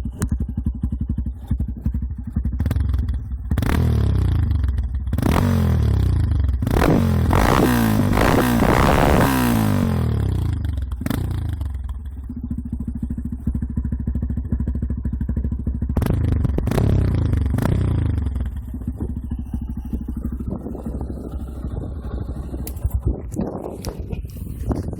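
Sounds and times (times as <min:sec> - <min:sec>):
motorcycle engine revving and idling: 0:00.0 - 0:24.9
exhaust cracks: 0:06.6 - 0:24.9.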